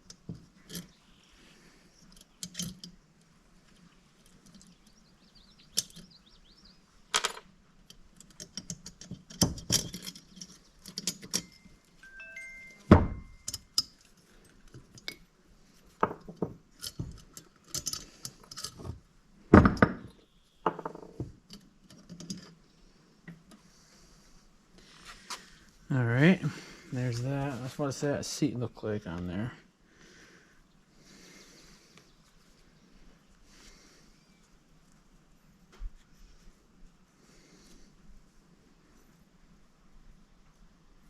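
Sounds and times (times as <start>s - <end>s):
metal parts clinking and knocking: 2.1s - 3.0s, 7.1s - 11.8s, 12.8s - 15.2s, 16.0s - 20.1s, 20.7s - 22.6s.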